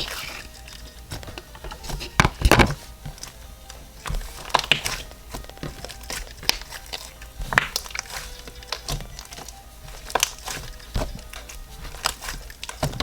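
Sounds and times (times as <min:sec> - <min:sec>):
slime crackling and popping: 0:00.0 - 0:13.0.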